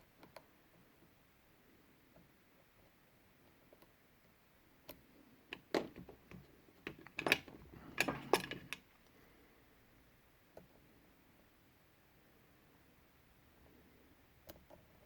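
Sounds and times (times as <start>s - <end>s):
lock pick clicking in padlock: 5.5s - 8.8s.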